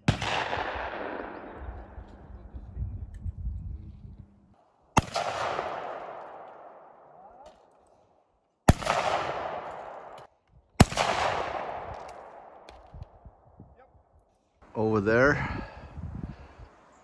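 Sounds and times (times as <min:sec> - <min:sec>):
rifle shots: 0:00.0 - 0:02.2, 0:05.0 - 0:07.2, 0:08.7 - 0:12.9
rolling echo: 0:00.0 - 0:03.3, 0:04.6 - 0:13.5.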